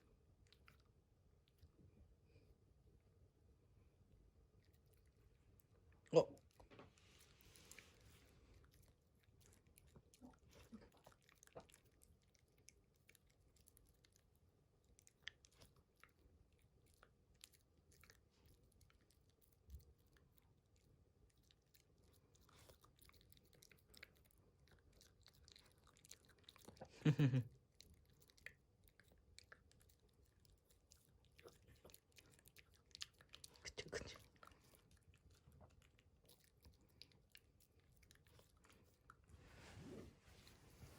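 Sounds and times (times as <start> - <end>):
puppy chewing wet mouth clicks: 7.6 - 39.2.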